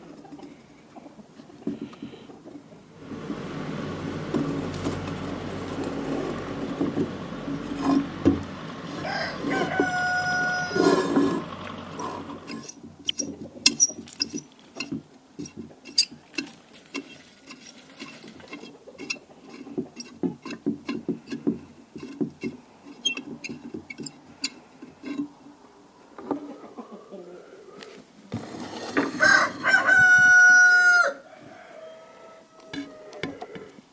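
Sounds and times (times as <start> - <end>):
low mechanical hum: 1.7 - 26.3
sharp clicks and knocks: 4.3 - 8.8, 18.0 - 25.3
rooster crowing: 8.6 - 12.5, 29.0 - 33.8.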